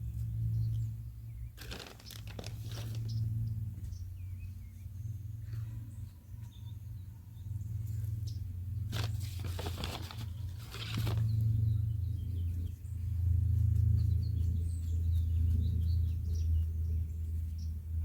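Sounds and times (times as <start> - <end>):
small birds chirping: 0.0 - 18.0
rustling or scraping: 1.6 - 3.2, 8.9 - 11.5.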